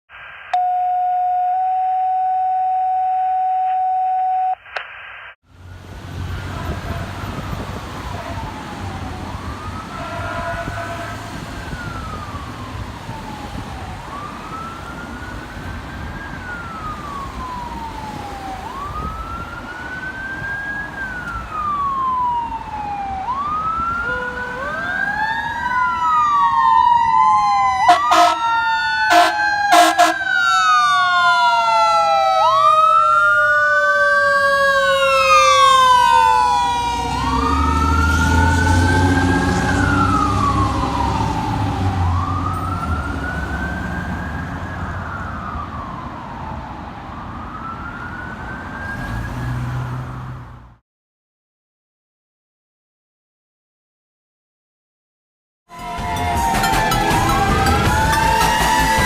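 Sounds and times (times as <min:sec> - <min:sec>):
fire engine siren wailing: 0:00.5 - 0:04.5, 0:05.5 - 0:50.3, 0:55.7 - 0:59.0
truck engine rumble: 0:05.5 - 0:31.1, 0:34.2 - 0:46.3, 0:55.8 - 0:59.0
air horn blasts: 0:10.0 - 0:11.4, 0:27.9 - 0:28.5, 0:29.1 - 0:30.3.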